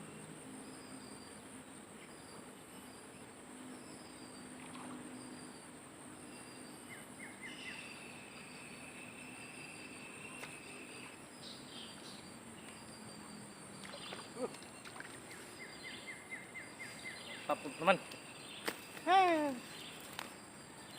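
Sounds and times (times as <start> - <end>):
high insect chorus: 0.0 - 20.9.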